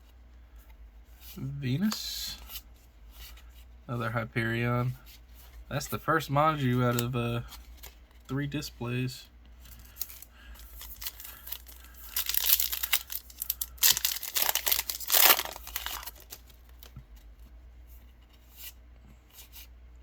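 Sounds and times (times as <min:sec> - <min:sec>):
foil wrapper crinkling and tearing: 0:09.8 - 0:16.9.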